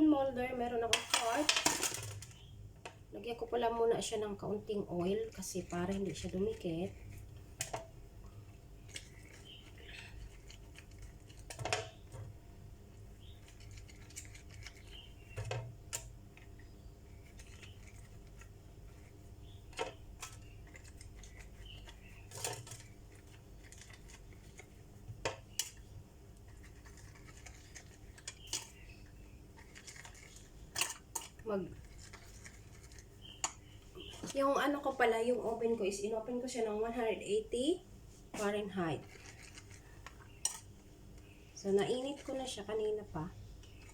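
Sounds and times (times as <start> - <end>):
utensils clinking on baking tray: 0.9 - 2.4, 21.8 - 22.9, 29.7 - 31.5, 38.9 - 40.7.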